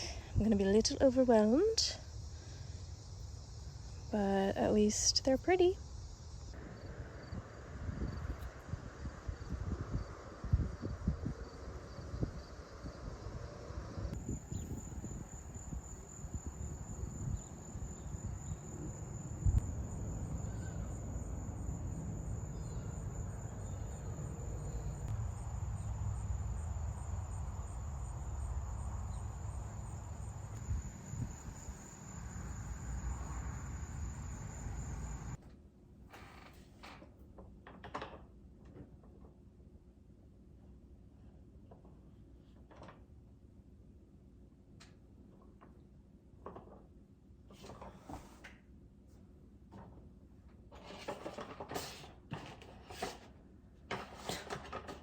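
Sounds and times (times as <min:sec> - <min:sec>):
insects trilling: 0:00.0 - 0:35.4
low rumble: 0:06.6 - 0:35.4.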